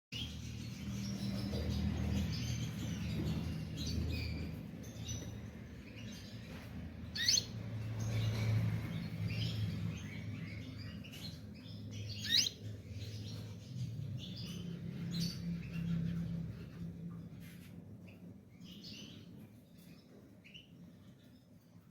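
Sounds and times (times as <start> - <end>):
canary chirps and trills: 0.1 - 21.9.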